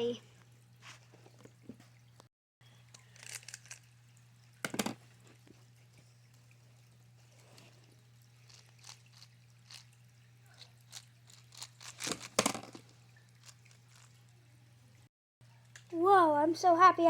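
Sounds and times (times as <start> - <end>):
puzzle cube clicking and scraping: 3.1 - 3.8, 10.9 - 12.8.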